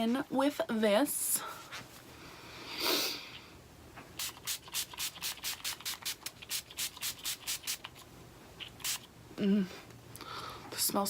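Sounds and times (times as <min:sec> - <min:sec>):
spray bottle hisses: 0:04.2 - 0:07.9, 0:08.7 - 0:09.1.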